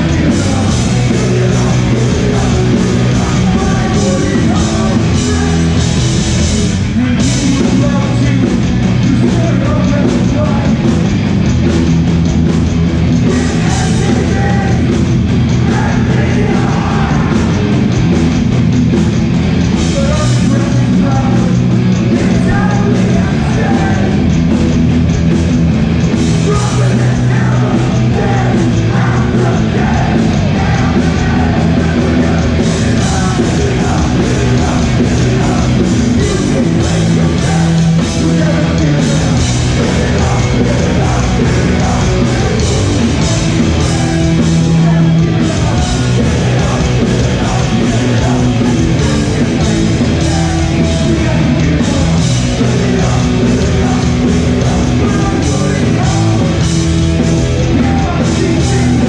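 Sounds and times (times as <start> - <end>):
bass and drums: 0.0 - 59.0
distorted guitars: 0.0 - 59.0
shouted vocals: 15.6 - 17.7, 26.3 - 56.6, 57.4 - 59.0.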